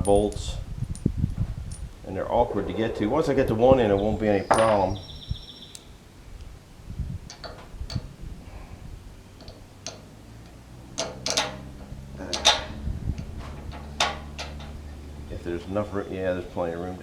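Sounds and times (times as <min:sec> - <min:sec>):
low steady hum: 0:01.0 - 0:07.3.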